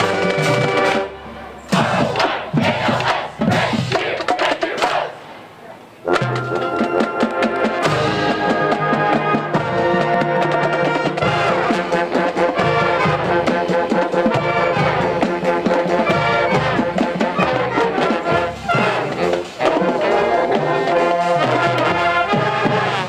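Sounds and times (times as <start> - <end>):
brass band playing: 0.0 - 5.2, 6.0 - 23.0
drum hits: 1.7 - 5.0.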